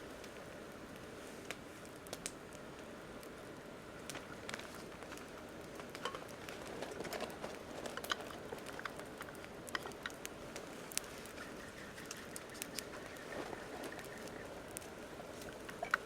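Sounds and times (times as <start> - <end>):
campfire crackling and popping: 0.0 - 16.0
fire hissing: 0.0 - 16.0.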